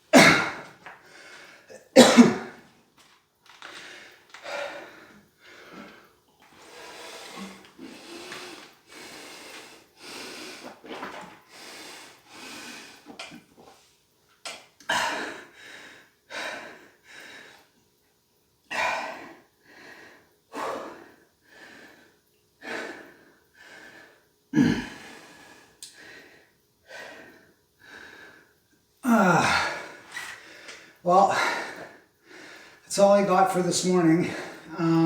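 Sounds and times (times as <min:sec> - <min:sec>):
man breathing hard: 0:03.6 - 0:10.9, 0:11.5 - 0:13.2, 0:14.9 - 0:17.7, 0:18.7 - 0:32.9.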